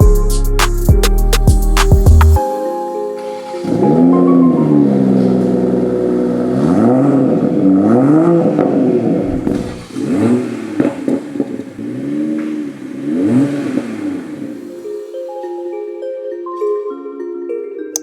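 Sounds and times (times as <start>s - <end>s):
car engine idling and revving: 3.6s - 15.0s
exhaust pops: 8.6s - 12.9s.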